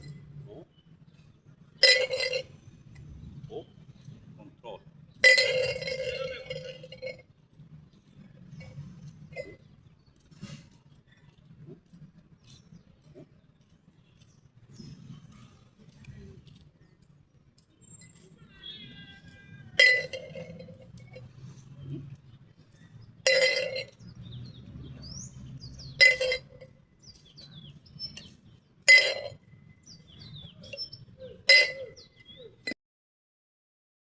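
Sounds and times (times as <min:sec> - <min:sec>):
bottle clinking against glass: 0:01.8 - 0:02.5, 0:05.2 - 0:07.2, 0:19.8 - 0:21.2, 0:23.2 - 0:24.0, 0:25.8 - 0:26.7, 0:28.9 - 0:29.4, 0:30.6 - 0:32.2.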